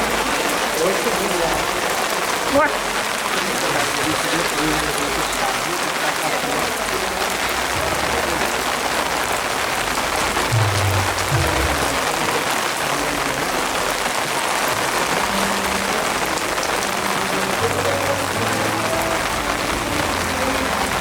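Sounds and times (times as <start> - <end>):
heavy rain: 0.0 - 21.0.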